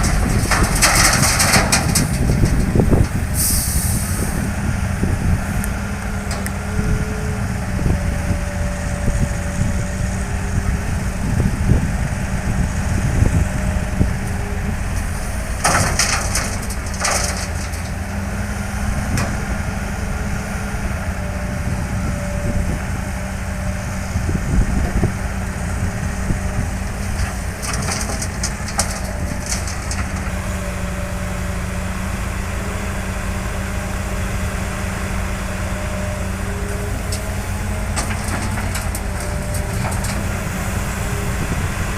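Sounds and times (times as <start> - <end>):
hissing and rattling: 0.0 - 4.4, 15.0 - 18.1, 26.8 - 30.6, 37.1 - 40.7
heavy diesel machinery running: 0.0 - 41.9.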